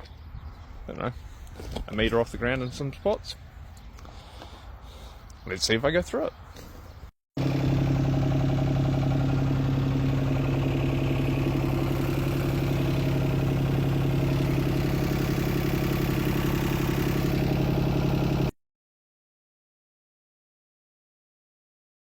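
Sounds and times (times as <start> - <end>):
digger diesel engine clattering: 7.4 - 18.5.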